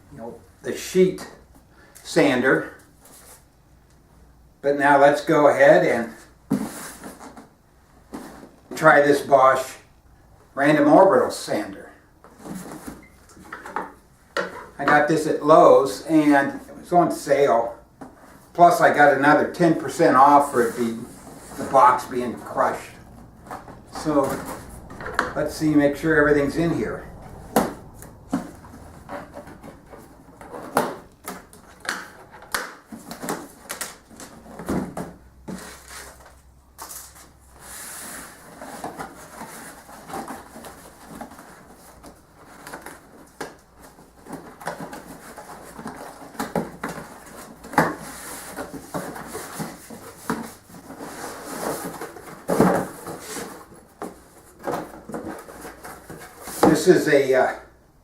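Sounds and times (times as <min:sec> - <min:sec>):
cardboard box rustling: 0:20.4 - 0:56.9.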